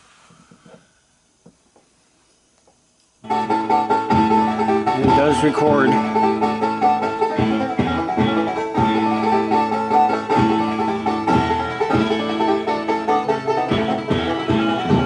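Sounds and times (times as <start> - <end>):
country music with plucked banjo: 3.2 - 15.0.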